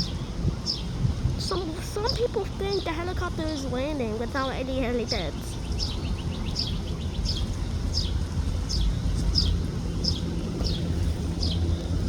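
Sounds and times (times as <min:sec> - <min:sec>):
bird chirping: 0:00.0 - 0:01.0, 0:04.3 - 0:12.0
low rumble: 0:05.5 - 0:12.0.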